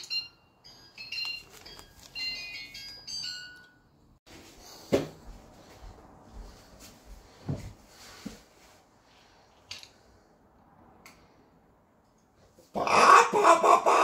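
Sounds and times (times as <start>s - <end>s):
high-pitched chiming jingle: 0.0s - 4.1s.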